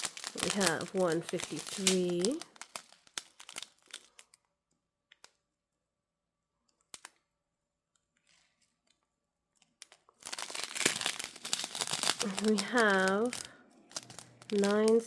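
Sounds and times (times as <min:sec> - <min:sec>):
plastic bags clicking: 0:00.0 - 0:04.5, 0:09.6 - 0:15.0.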